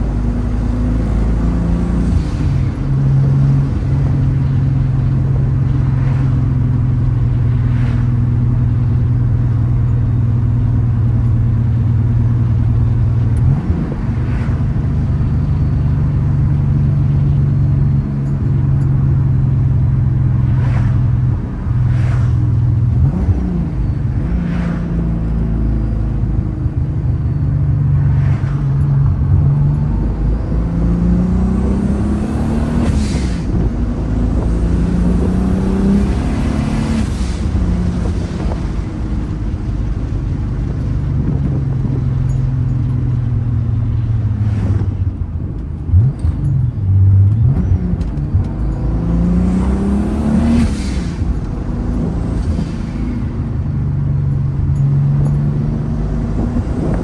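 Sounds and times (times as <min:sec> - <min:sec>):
car engine revving: 0:00.0 - 0:57.0
short rushing sounds: 0:20.4 - 0:26.1.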